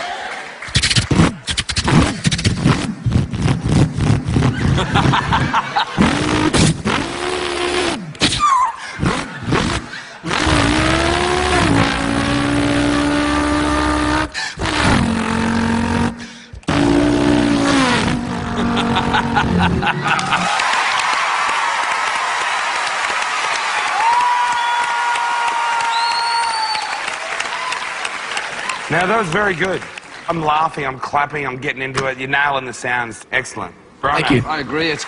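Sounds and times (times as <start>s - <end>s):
man imitating car engine: 5.9s - 20.4s.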